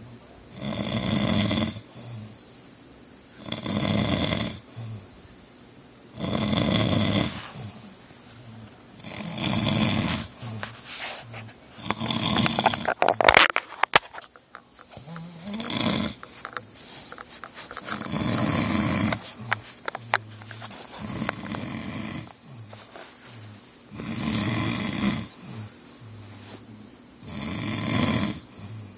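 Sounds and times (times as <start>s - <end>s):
man snoring loudly: 0.5s - 2.3s, 3.4s - 5.1s, 6.1s - 7.8s, 9.0s - 10.6s, 11.8s - 13.4s, 15.0s - 16.8s, 17.8s - 20.4s, 21.0s - 22.7s, 23.9s - 28.9s.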